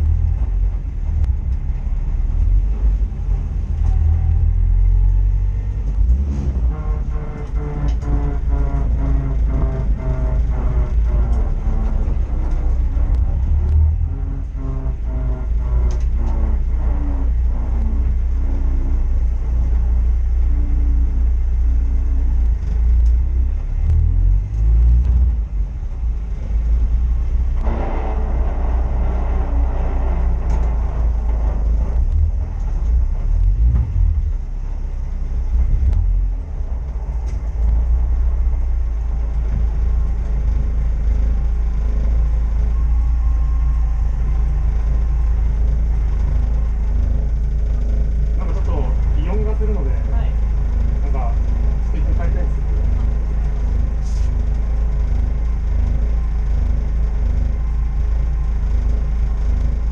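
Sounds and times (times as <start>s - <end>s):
racing engine running: 0.0s - 59.9s.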